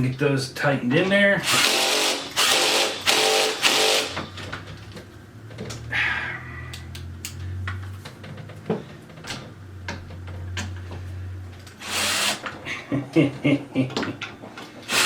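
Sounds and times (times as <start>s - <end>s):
cordless drill whirring: 1.4s - 4.2s, 11.8s - 12.4s.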